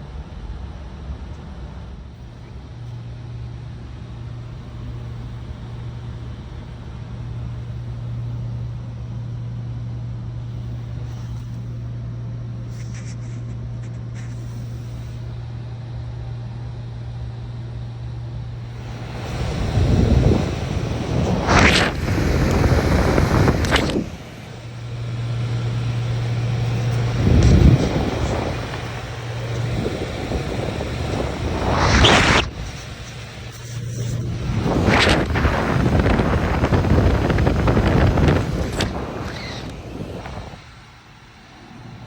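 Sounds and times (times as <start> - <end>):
hvac unit humming: 0.0 - 42.0
rushing noise: 18.7 - 40.8.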